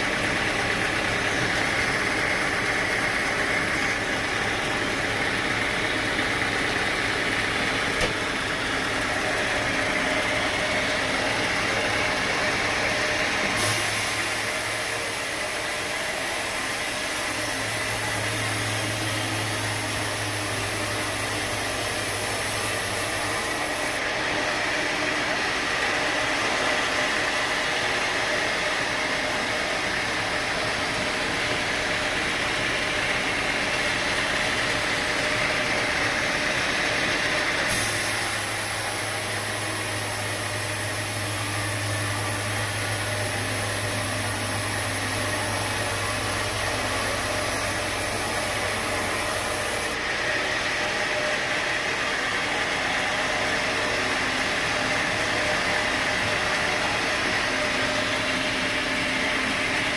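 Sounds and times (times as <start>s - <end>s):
sawmill machinery running: 0.0s - 59.9s
high hiss: 37.7s - 50.0s.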